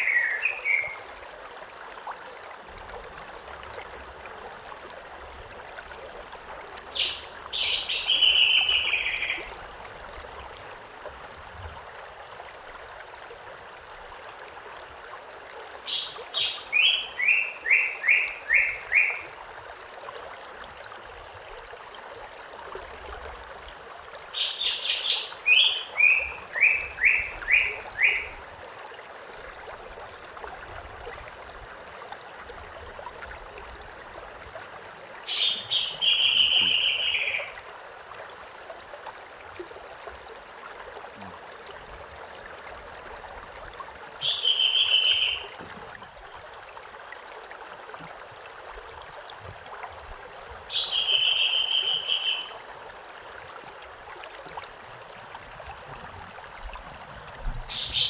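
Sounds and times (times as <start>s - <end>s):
small bird singing: 0.0s - 1.0s, 7.0s - 9.4s, 15.9s - 19.2s, 24.4s - 28.3s, 35.3s - 37.5s, 44.2s - 45.5s, 50.7s - 52.5s, 57.7s - 58.0s
river water rushing: 0.0s - 2.0s, 13.4s - 20.8s, 23.9s - 30.5s.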